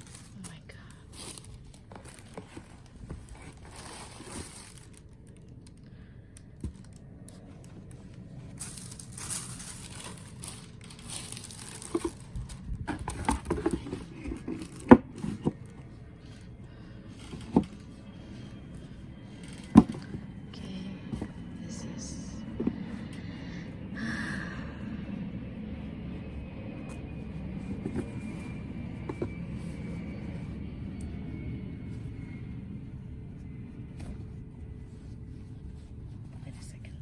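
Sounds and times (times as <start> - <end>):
paper wrapping rustling: 0.0 - 0.5, 1.1 - 5.8, 6.6 - 20.6
box being handled: 1.1 - 5.0, 6.6 - 21.6, 27.6 - 30.6.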